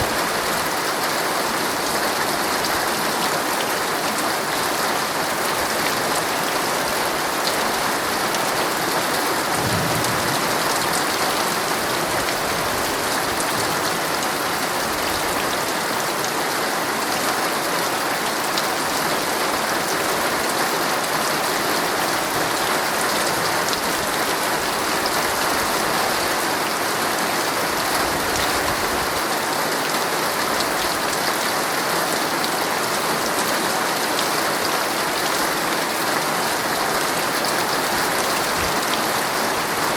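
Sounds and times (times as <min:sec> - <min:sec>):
heavy rain drumming on tent fabric: 0:00.0 - 0:39.9.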